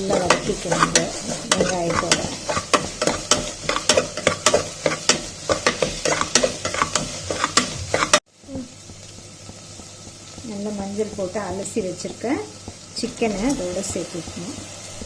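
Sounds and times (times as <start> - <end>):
spatula scraping a pan: 0.0 - 8.2
onions frying in oil: 0.0 - 15.0.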